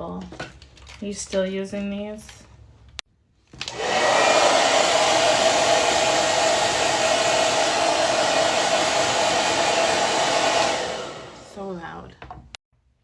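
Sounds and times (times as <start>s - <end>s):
hair dryer running: 3.6s - 11.8s.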